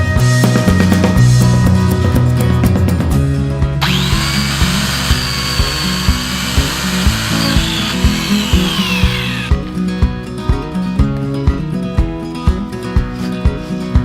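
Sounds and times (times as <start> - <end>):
electric saw motor whine: 3.8 - 9.5.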